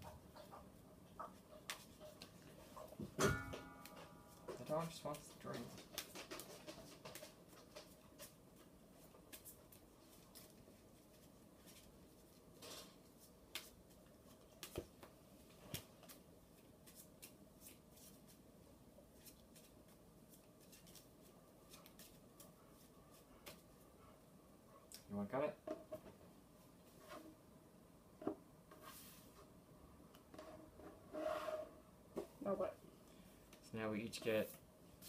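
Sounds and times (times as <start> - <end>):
playing cards shuffling: 19.2 - 22.2.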